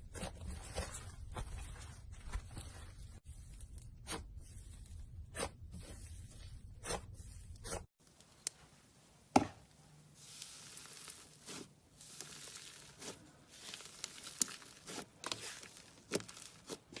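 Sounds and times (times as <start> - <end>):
slime crackling and popping: 10.2 - 17.0.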